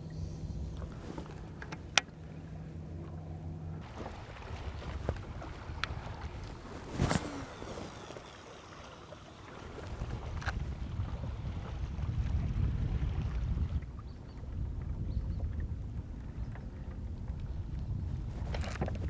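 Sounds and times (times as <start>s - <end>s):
sharp clicks on boat: 0.0s - 11.2s, 13.8s - 19.0s
electric motor humming: 5.3s - 10.6s.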